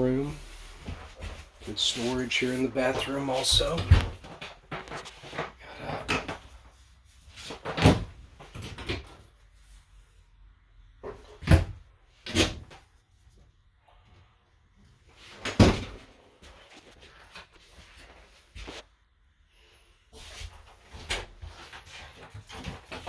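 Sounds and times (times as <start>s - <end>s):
cabinet doors opening and shutting: 3.0s - 6.5s, 7.4s - 9.2s, 11.0s - 12.8s.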